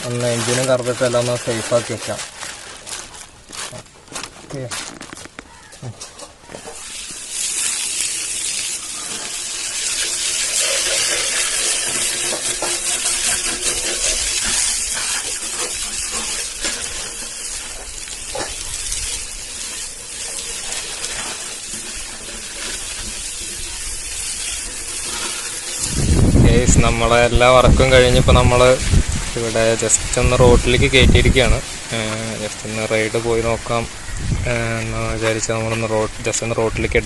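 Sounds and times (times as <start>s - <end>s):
water spraying onto motorcycle: 6.7s - 33.8s.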